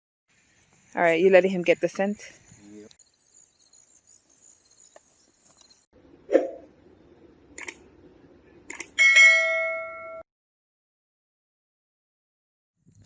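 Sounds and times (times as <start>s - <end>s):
bell-like chime: 9.0s - 10.2s.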